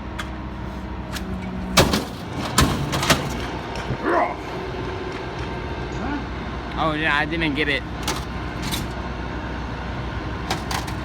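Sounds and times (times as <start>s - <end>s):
truck engine idling: 0.0s - 11.0s
metal machine crashing on ground: 1.7s - 3.6s.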